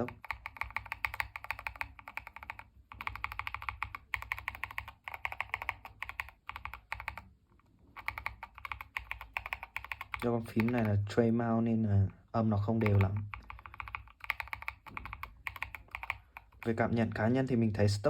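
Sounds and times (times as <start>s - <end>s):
mechanical keyboard typing: 0.0s - 7.3s, 7.9s - 11.1s, 12.6s - 17.1s.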